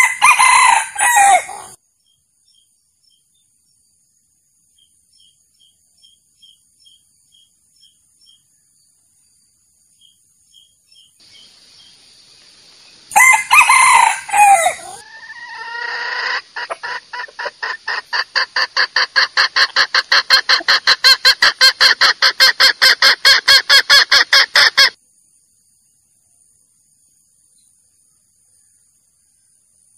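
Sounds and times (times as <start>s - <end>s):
rooster crowing: 0.0s - 1.8s, 13.1s - 16.5s
fast clucking: 16.0s - 24.9s.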